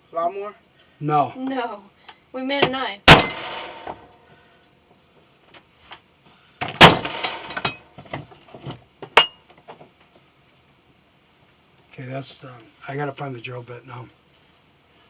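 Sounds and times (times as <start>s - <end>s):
metal tools clattering on workbench: 3.1s - 4.0s, 6.6s - 7.8s.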